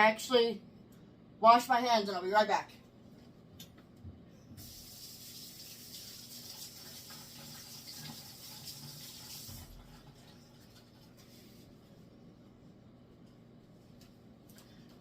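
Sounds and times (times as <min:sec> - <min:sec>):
tap water running: 0:04.6 - 0:11.4.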